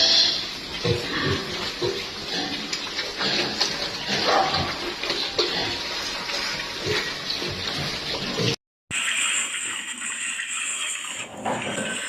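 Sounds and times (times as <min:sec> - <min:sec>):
pigs grunting: 0:00.0 - 0:08.6.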